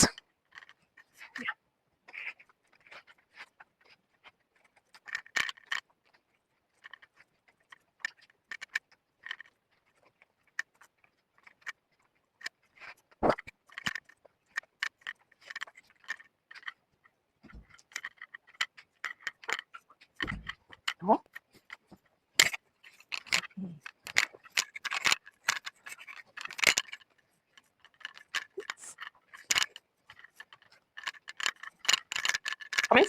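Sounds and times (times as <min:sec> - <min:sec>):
belt clicks and jingles: 0:00.1 - 0:33.0
soft thumps: 0:20.2 - 0:20.7.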